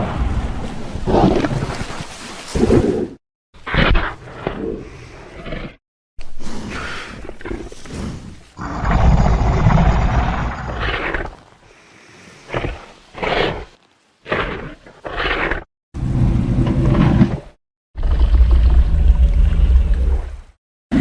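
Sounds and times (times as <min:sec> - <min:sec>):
deep dinosaur roars: 0:08.6 - 0:11.4.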